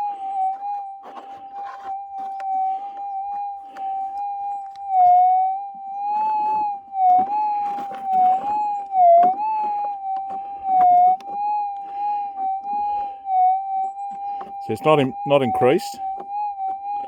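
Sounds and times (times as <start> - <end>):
coil scraping soil: 6.2 - 8.8
metal detector threshold tone: 13.3 - 16.8.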